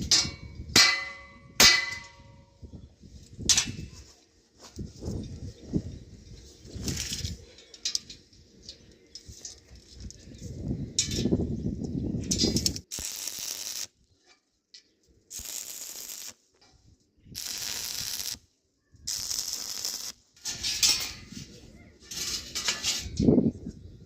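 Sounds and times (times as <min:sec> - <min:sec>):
welding bursts: 0:12.6 - 0:14.0, 0:15.3 - 0:16.4, 0:17.4 - 0:18.5, 0:19.1 - 0:21.1.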